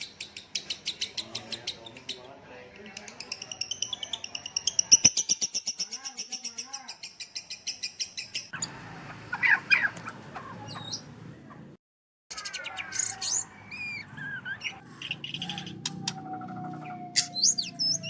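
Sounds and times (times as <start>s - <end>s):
songbird trilling and chirping: 12.3s - 18.0s.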